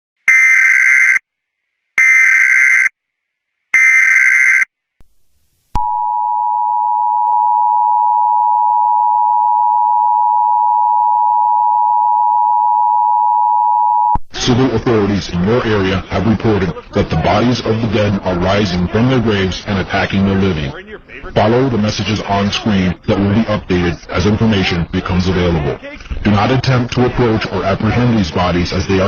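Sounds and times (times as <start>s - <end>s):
buzzy data screech: 0.3s - 1.2s, 2.0s - 2.9s, 3.8s - 4.7s
two-tone attention signal: 0.3s - 1.2s, 2.0s - 2.9s, 3.8s - 4.7s.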